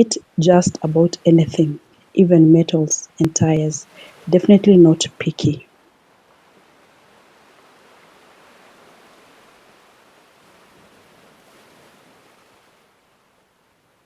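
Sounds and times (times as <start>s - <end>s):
faint wash of water: 3.9s - 4.3s, 5.8s - 14.0s.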